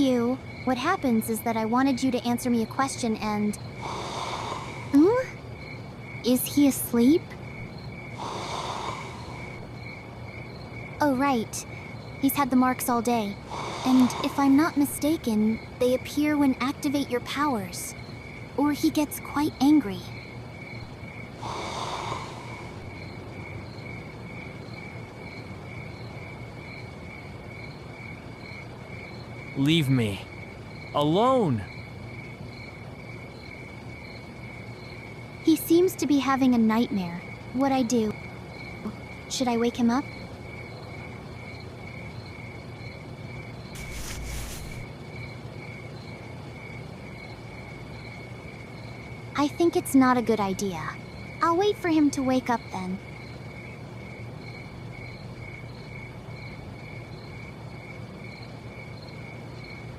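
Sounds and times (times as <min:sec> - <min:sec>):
crickets chirping: 0:00.0 - 0:59.9
person exhaling in sleep: 0:03.8 - 0:05.0, 0:08.2 - 0:09.6, 0:13.4 - 0:14.4, 0:21.4 - 0:23.0
soft rush of noise: 0:43.8 - 0:44.9.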